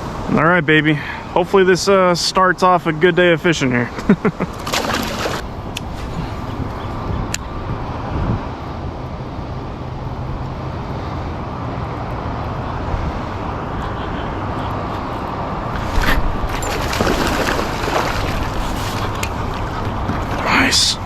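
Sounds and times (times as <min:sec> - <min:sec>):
wind buffeting microphone: 0:05.0 - 0:10.6, 0:11.5 - 0:21.0
rough rustling: 0:15.7 - 0:21.0.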